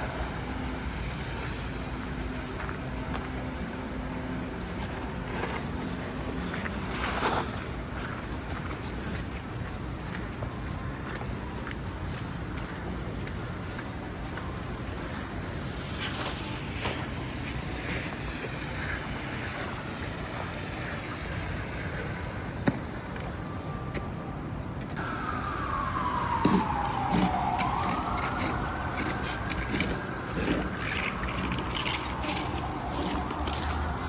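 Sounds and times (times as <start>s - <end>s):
emergency siren wailing: 0.0s - 7.0s, 22.9s - 34.0s
street traffic: 0.0s - 34.0s.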